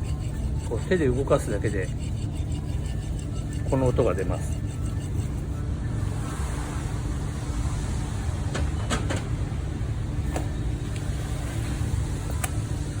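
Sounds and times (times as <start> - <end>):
wheel bearing grinding: 0.0 - 6.2.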